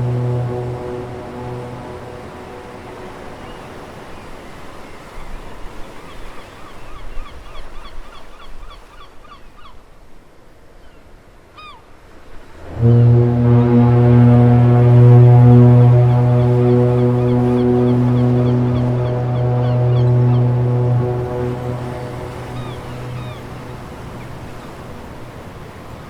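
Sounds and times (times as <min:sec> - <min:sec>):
seabird calls: 0:00.0 - 0:04.5, 0:12.6 - 0:25.3
low foghorn blast: 0:00.0 - 0:05.1, 0:12.4 - 0:25.9
sea ambience: 0:00.0 - 0:08.9, 0:12.1 - 0:26.0.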